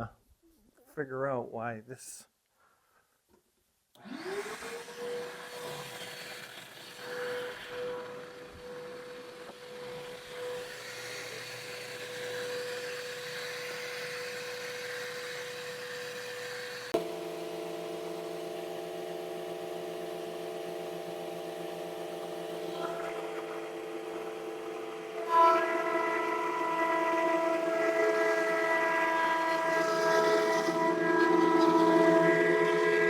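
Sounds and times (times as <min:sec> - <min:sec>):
machine motor whine: 0:04.0 - 0:33.0
deep multi-tone motor hum: 0:07.1 - 0:33.0.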